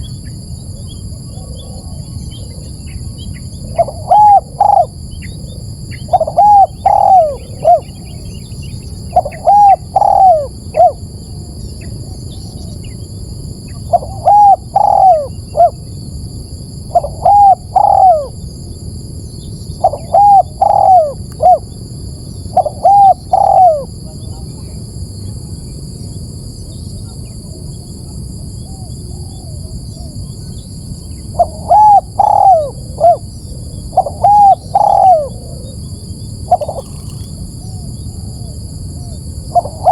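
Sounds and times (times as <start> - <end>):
dove cooing: 0.8 - 11.5, 13.7 - 15.9, 16.9 - 18.4, 19.8 - 21.8, 22.5 - 24.7, 31.3 - 39.9.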